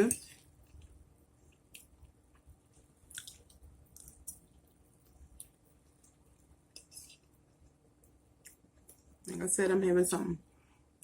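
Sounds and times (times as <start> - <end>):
person chewing: 0.2 - 7.4.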